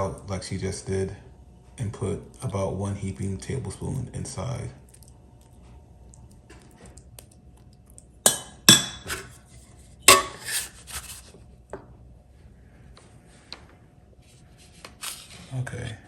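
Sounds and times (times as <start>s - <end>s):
metal spoon clinking on dish: 8.3s - 9.3s, 10.1s - 10.6s.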